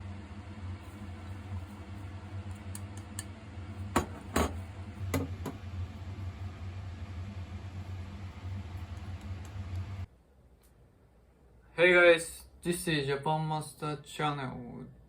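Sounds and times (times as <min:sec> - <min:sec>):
steady low hum: 0:00.0 - 0:11.6
kitchenware clinking: 0:04.0 - 0:04.6.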